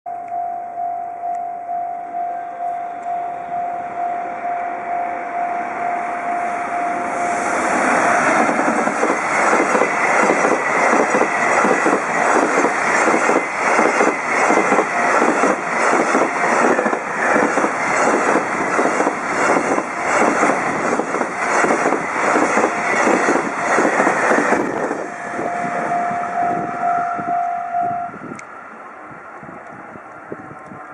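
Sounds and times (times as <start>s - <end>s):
train wheels clattering: 7.8s - 25.1s.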